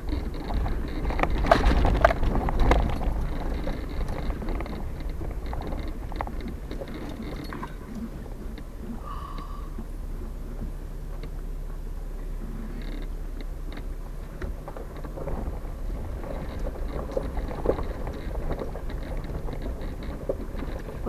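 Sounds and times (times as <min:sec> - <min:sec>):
knocks and rattles: 0:00.0 - 0:09.5
vehicle engine drone: 0:00.0 - 0:21.0.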